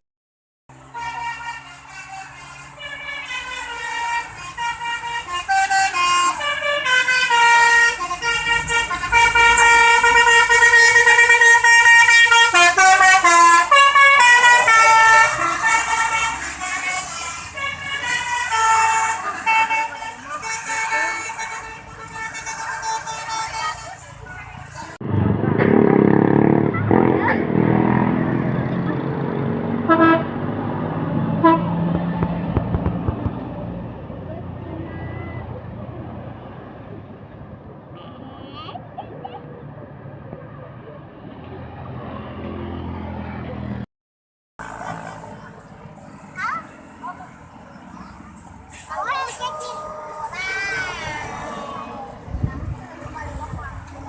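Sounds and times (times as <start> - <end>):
vehicle running: 0.7 - 43.9, 44.6 - 54.0
bus horn: 0.8 - 24.1, 29.8 - 30.6, 31.2 - 31.9, 34.7 - 35.6.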